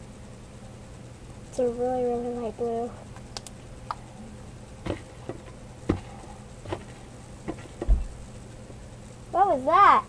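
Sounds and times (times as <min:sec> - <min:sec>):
dull thump: 0:04.8 - 0:08.2.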